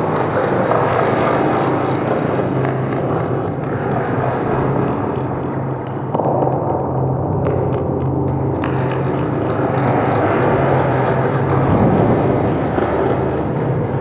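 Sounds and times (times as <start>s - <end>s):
steady low drone: 0.0s - 14.0s
rumbling wash of noise: 4.9s - 14.0s.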